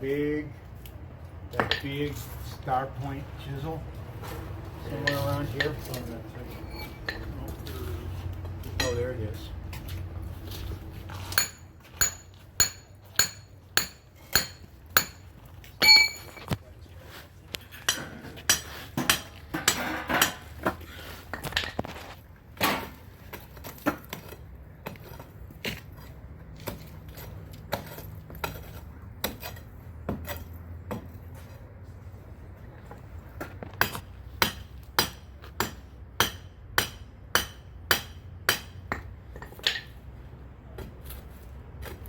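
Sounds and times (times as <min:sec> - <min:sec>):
hammer striking steel chisel: 0:11.2 - 0:16.5, 0:17.8 - 0:20.4, 0:33.8 - 0:39.9.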